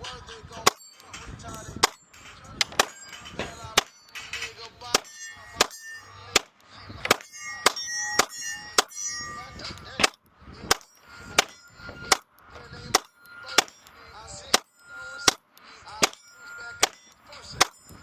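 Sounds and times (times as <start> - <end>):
steel targets clanging: 0.0 - 18.0
pistol shots: 2.6 - 4.0, 9.8 - 12.2, 12.9 - 13.8, 16.0 - 16.2, 16.8 - 17.8.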